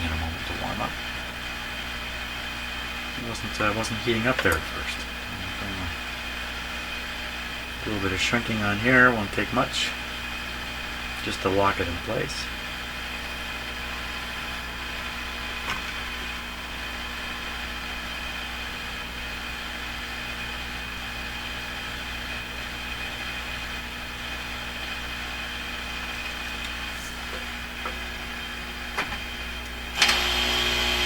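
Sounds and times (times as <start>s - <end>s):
heat gun blowing: 30.0s - 31.0s.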